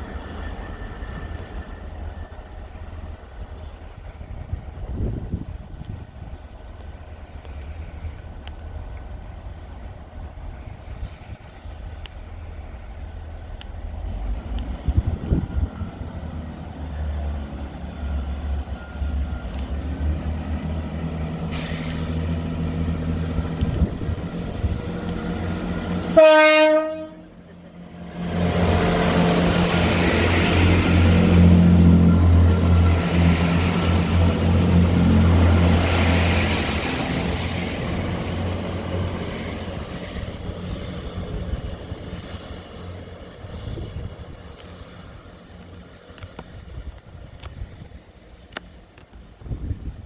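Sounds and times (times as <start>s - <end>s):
diesel train engine rumbling: 0.0s - 50.0s
train horn blast: 26.1s - 27.4s.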